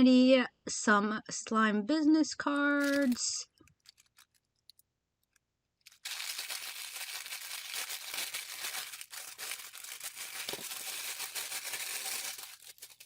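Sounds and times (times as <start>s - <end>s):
plastic packaging crinkling: 2.8s - 13.0s.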